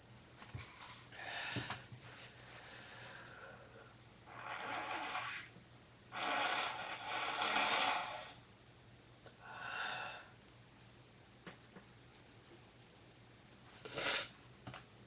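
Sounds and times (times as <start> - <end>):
person blowing nose: 4.3 - 5.5, 6.1 - 8.4, 13.8 - 14.4.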